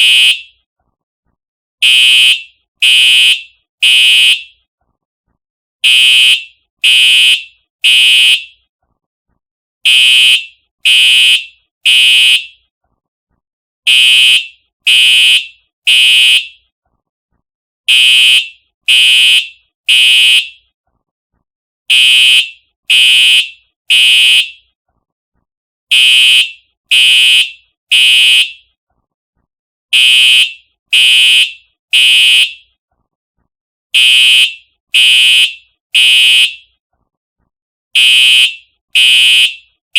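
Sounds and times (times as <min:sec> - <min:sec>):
fire alarm horn blasts: 0:00.0 - 0:00.6, 0:01.8 - 0:04.6, 0:05.8 - 0:08.6, 0:09.8 - 0:12.6, 0:13.9 - 0:16.6, 0:17.9 - 0:20.6, 0:21.9 - 0:24.7, 0:25.9 - 0:28.7, 0:29.9 - 0:32.7, 0:34.0 - 0:36.7, 0:38.0 - 0:39.7.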